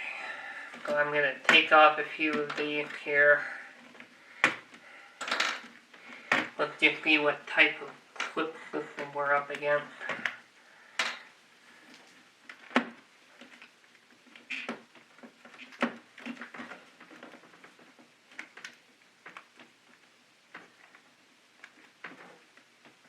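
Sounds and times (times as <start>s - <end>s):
plastic clicks and knocks: 12.5s - 23.0s.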